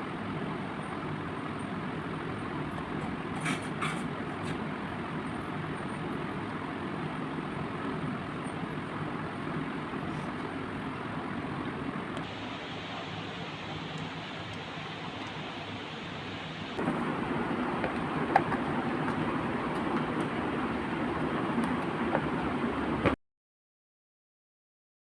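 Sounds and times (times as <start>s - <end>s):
vehicle interior rumble: 16.8s - 23.2s.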